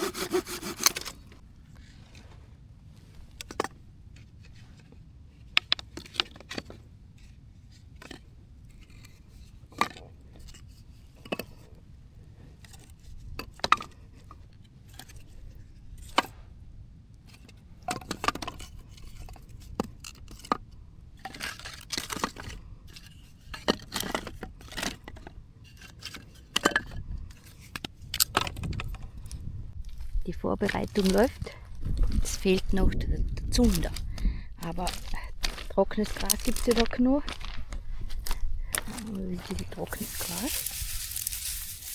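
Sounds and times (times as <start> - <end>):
rustling and scraping: 34.7 - 41.9.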